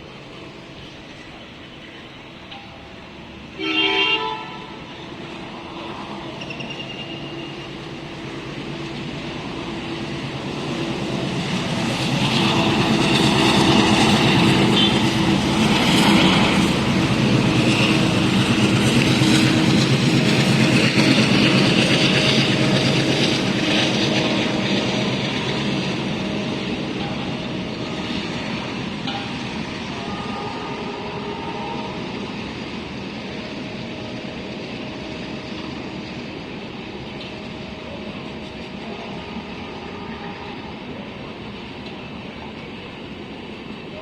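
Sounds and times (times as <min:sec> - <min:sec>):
locomotive horn honk: 0:03.6 - 0:04.9, 0:14.6 - 0:15.3, 0:29.8 - 0:32.3.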